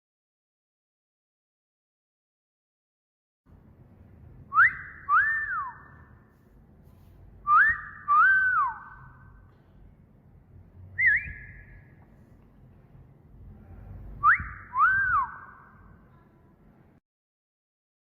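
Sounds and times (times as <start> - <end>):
short wavering whistle: 4.5 - 6.1, 7.4 - 9.4, 11.0 - 11.9, 14.2 - 15.9
wolf whistle: 4.5 - 6.1, 7.4 - 9.2, 11.0 - 11.8, 14.2 - 15.8.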